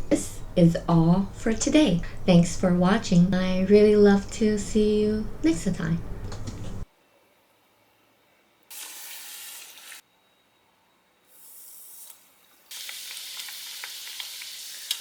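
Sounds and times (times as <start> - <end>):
dough sizzling in hot oil: 8.7 - 10.0, 11.3 - 15.0.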